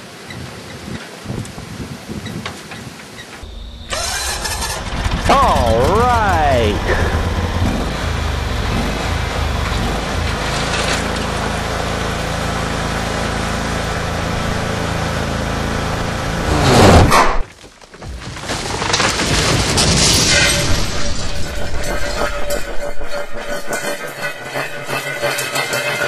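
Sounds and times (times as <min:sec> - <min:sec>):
lawn tractor engine running: 0:03.4 - 0:16.8.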